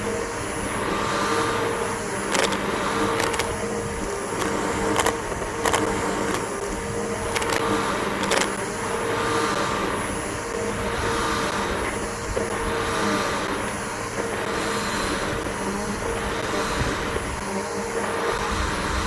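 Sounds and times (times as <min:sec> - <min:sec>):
vacuum cleaner motor whining: 0:00.0 - 0:19.0
sharp clicks: 0:02.2 - 0:08.6.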